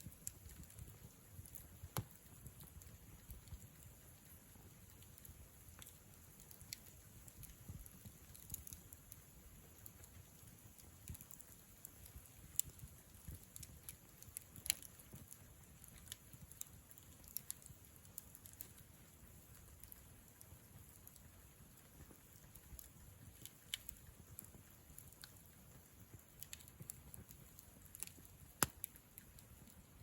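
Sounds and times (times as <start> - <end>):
firewood crackling and popping: 0.0 - 30.0
flame rustling: 0.0 - 30.0.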